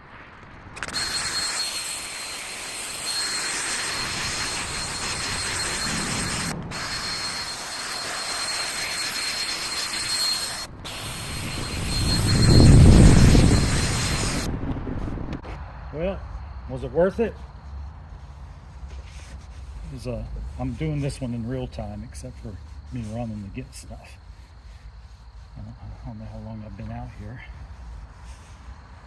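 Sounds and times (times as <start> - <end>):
electric drill motor whine: 0.8 - 14.5
low rumble: 11.6 - 16.6.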